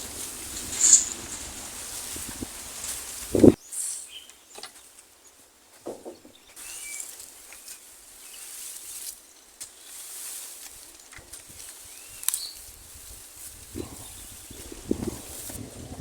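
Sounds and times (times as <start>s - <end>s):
high hiss: 0.0s - 4.0s.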